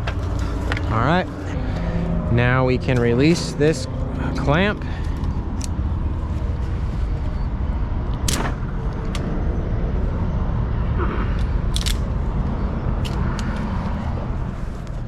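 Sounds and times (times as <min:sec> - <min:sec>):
low background rumble: 0:00.0 - 0:15.0
ratchet strap metal clicks: 0:11.7 - 0:12.0.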